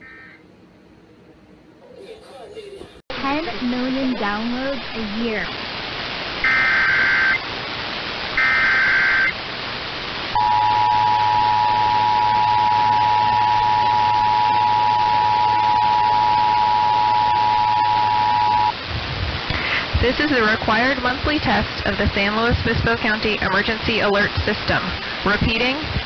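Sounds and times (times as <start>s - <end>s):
warbling digital header bursts: 6.4s - 7.4s
two-tone attention signal: 10.4s - 18.8s.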